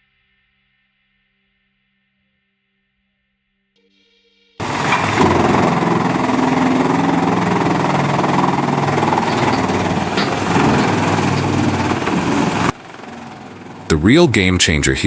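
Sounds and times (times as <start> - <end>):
heavy machinery engine running: 4.6 - 15.0.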